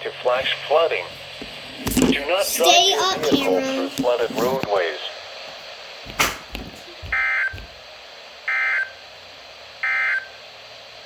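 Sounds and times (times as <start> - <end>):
sharp thump: 6.1 - 6.7.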